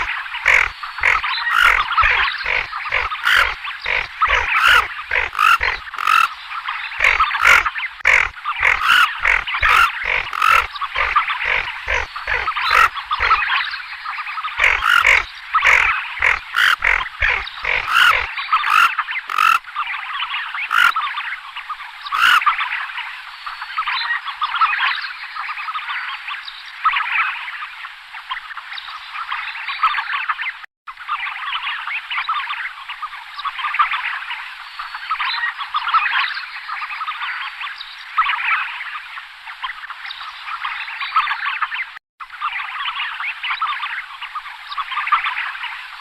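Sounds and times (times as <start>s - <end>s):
chorus of animal calls: 0.0s - 13.7s, 14.4s - 19.6s, 20.6s - 21.0s, 22.1s - 22.5s.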